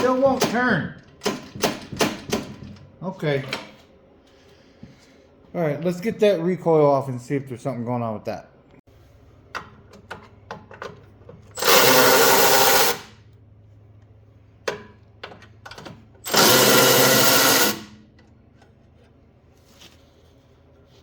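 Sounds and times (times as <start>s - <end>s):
power drill running: 11.6s - 13.1s, 16.2s - 18.0s.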